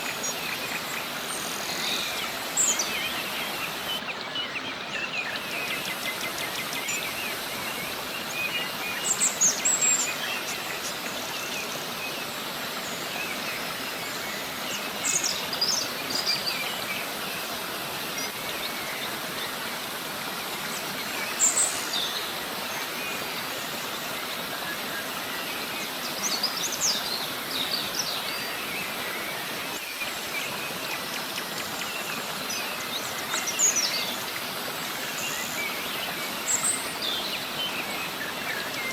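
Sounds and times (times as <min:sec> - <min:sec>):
small birds chirping: 0:00.0 - 0:20.0
river cascade rushing: 0:00.0 - 0:38.9.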